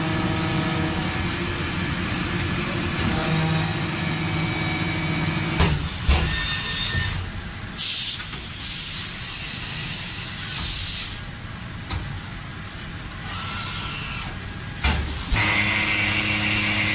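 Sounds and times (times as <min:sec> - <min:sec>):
high machine whine: 0:00.0 - 0:05.8
machine hiss: 0:07.8 - 0:11.2.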